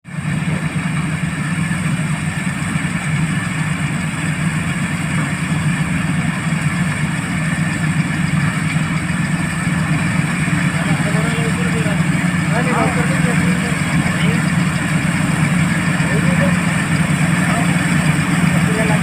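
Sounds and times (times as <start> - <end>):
combine harvester engine running: 0.0 - 19.0.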